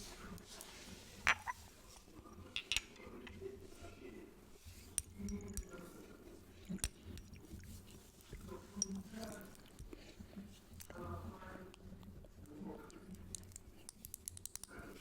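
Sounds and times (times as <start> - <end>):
glass bottles clinking: 1.3 - 1.6.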